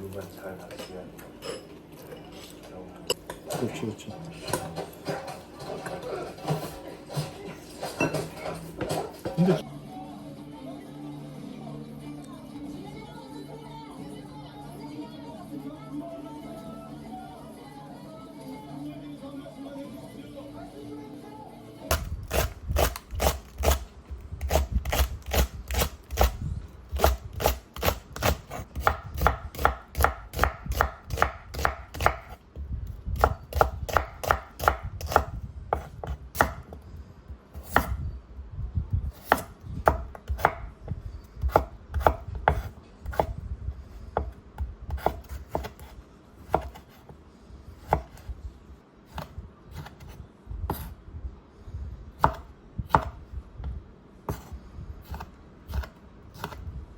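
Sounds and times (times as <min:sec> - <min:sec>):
knife chopping on cutting board: 0:21.9 - 0:26.4, 0:27.0 - 0:32.4, 0:33.2 - 0:36.8, 0:39.2 - 0:40.7, 0:41.4 - 0:43.3, 0:44.2 - 0:47.1, 0:47.8 - 0:48.3, 0:52.2 - 0:53.2, 0:55.1 - 0:56.6.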